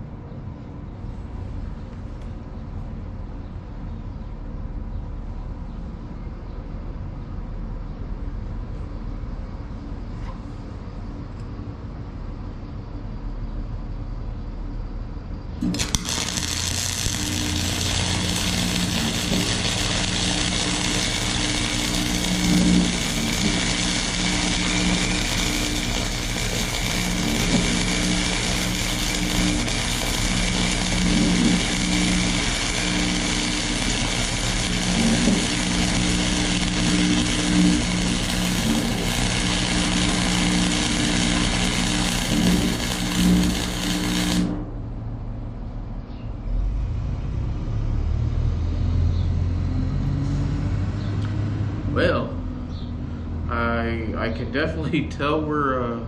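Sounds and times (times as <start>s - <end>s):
low hum: 15.4s - 46.1s
welder arc crackling hiss: 15.6s - 44.7s.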